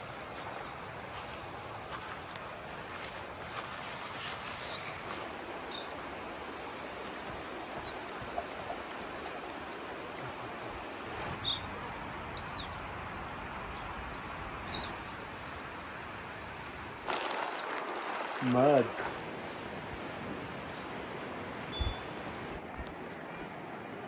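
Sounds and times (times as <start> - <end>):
river water rushing: 0.0 - 12.3, 17.0 - 22.5.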